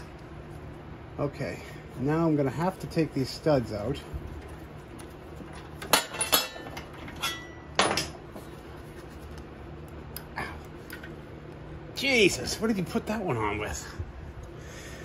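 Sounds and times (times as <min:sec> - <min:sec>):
hand tools clinking on metal: 0:05.8 - 0:08.1.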